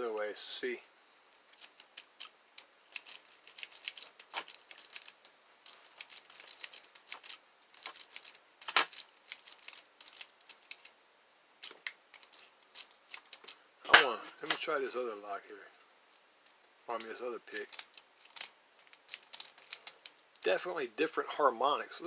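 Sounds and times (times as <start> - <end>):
lock pick clicking and scraping: 1.6 - 11.0, 11.6 - 13.6, 17.6 - 20.2.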